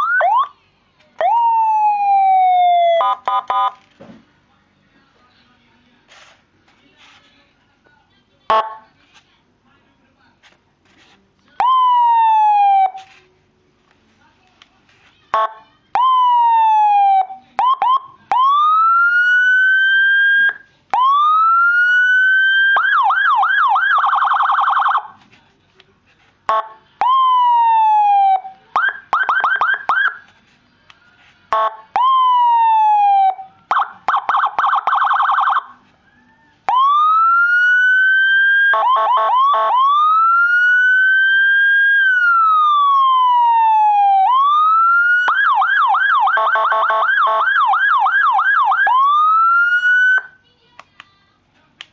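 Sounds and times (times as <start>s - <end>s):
electronic vehicle siren: 0.0s - 0.5s, 1.2s - 3.8s, 11.6s - 13.0s, 15.4s - 25.2s, 26.5s - 30.2s, 31.5s - 50.4s.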